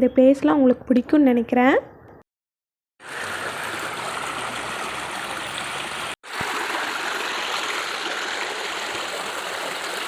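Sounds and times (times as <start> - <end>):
stream water rushing: 3.0 - 10.0.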